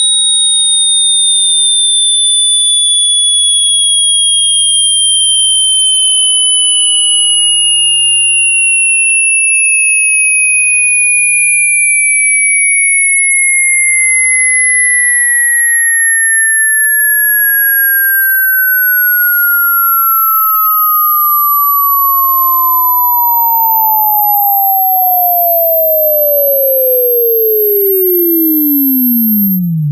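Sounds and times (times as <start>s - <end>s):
high tone rising in pitch: 14.1s - 29.9s
lower tone gliding down: 15.9s - 29.9s.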